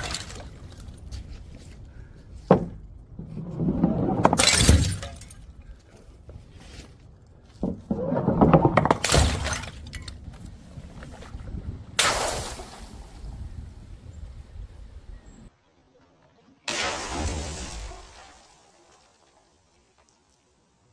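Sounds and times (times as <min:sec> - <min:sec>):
glass bottles shattering: 0:00.0 - 0:00.6, 0:04.2 - 0:05.5, 0:08.6 - 0:10.1.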